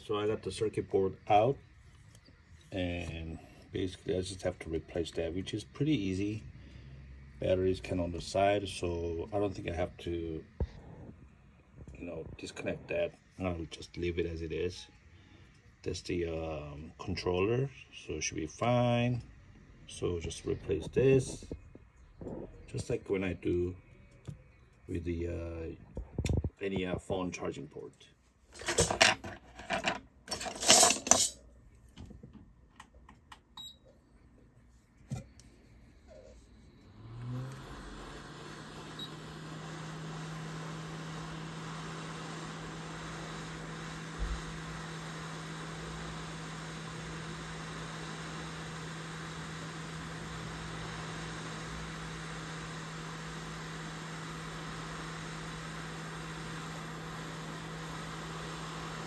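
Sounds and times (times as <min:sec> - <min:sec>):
metallic clatter of tools: 0:28.6 - 0:31.4
electric blower humming: 0:36.4 - 0:59.0.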